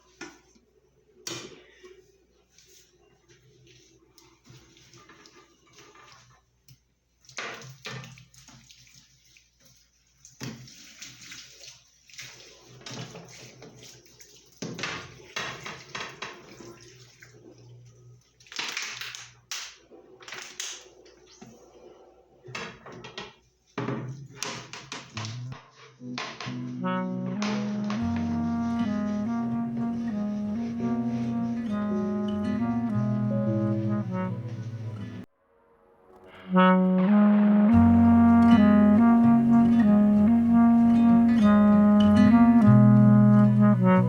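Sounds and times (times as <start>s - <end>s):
water running and splashing: 7.2s - 19.2s.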